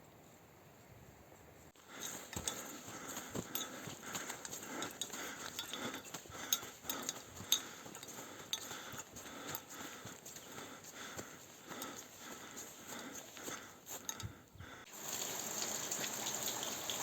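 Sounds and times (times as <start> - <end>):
footsteps on a trail: 1.7 - 14.9.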